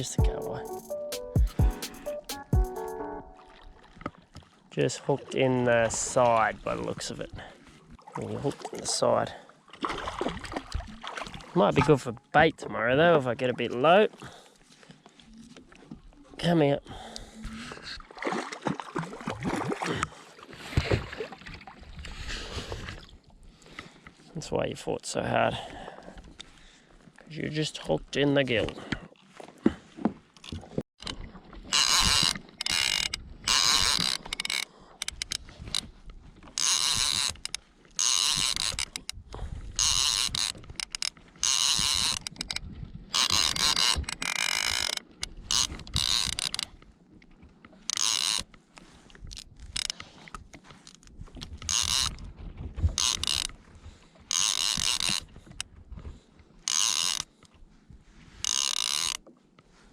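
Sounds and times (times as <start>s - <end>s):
fishing reel ratcheting: 31.7s - 35.9s, 36.6s - 39.1s, 39.8s - 42.6s, 43.2s - 46.7s, 47.9s - 48.5s, 51.6s - 52.2s, 53.0s - 53.5s, 54.3s - 55.2s, 56.7s - 57.3s, 58.4s - 59.2s.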